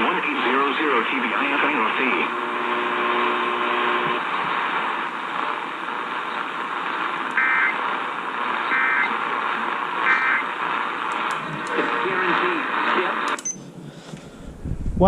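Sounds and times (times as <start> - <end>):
am radio static: 0.0 - 13.4.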